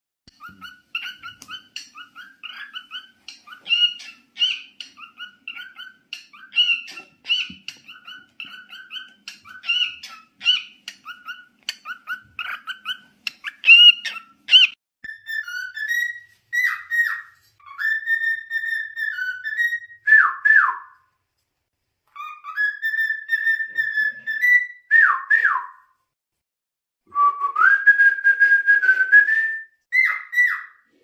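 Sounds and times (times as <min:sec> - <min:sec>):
cockatiel chirping and squawking: 0:00.3 - 0:20.0, 0:22.1 - 0:24.9, 0:29.9 - 0:30.9.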